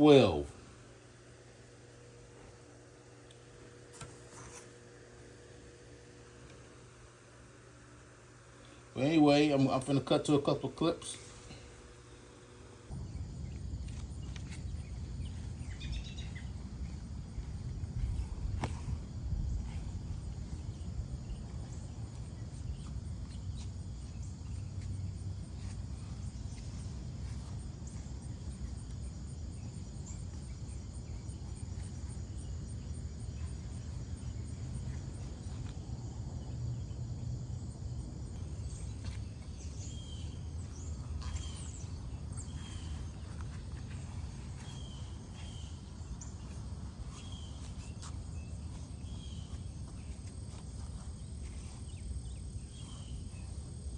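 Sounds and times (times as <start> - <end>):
insects chirping: 0.0 - 53.9
steady low rumble: 11.1 - 53.9
bird-like chirps: 14.2 - 17.0.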